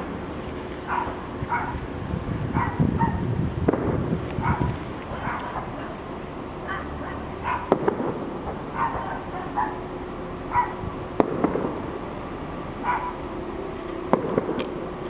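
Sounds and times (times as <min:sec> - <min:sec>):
fireworks bangs: 0:02.6 - 0:06.3, 0:07.2 - 0:10.0, 0:10.7 - 0:15.0.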